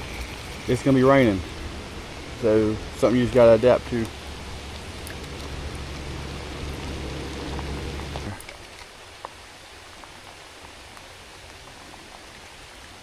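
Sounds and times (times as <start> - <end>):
low steady hum: 0.0 - 8.8
heavy rain pouring: 0.0 - 13.0
raindrops striking close by: 0.0 - 13.0.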